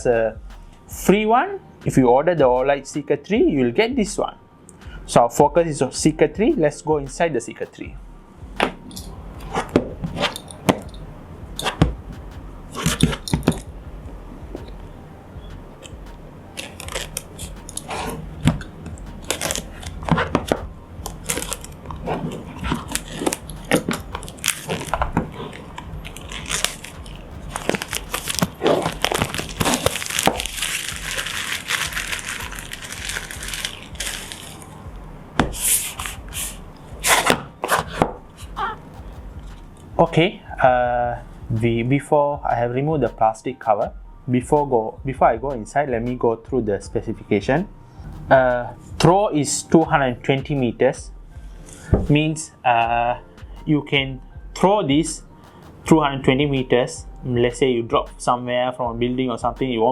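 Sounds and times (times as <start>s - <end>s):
taps and rustles of handling: 15.8s - 34.7s
plastic wrap tearing and crumpling: 16.6s - 18.2s, 19.2s - 34.8s.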